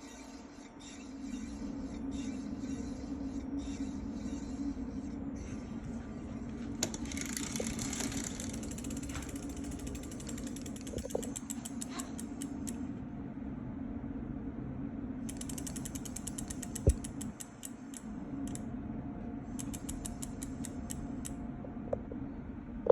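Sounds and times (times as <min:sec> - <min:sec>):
steady low hum: 0:00.0 - 0:22.9
brake disc squeaking and creaking: 0:06.7 - 0:12.2
rapid ratcheting clicks: 0:06.8 - 0:12.8, 0:15.3 - 0:18.6, 0:19.6 - 0:21.4.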